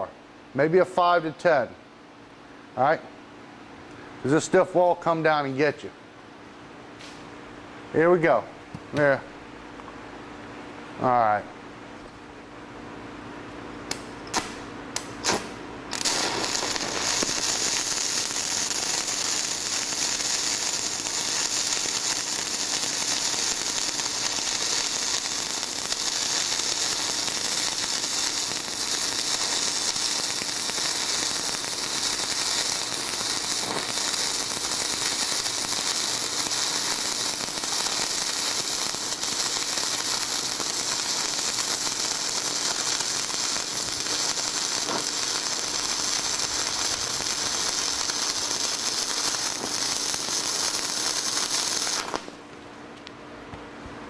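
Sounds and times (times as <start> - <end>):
sharp welding pops: 13.8 - 52.4
welding arc crackling: 13.9 - 52.4.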